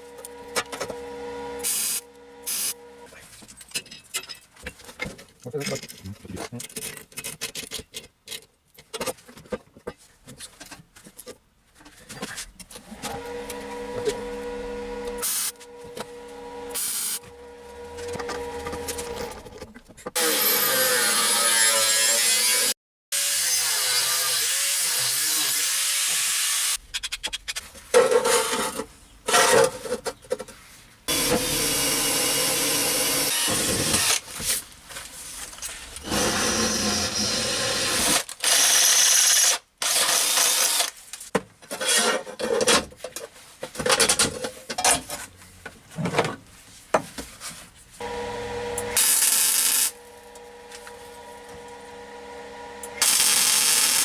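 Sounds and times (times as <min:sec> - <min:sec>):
angle grinder grinding steel: 0:12.8 - 0:19.6, 0:20.2 - 0:26.8, 0:31.1 - 0:34.2, 0:36.0 - 0:38.2, 0:48.0 - 0:54.0.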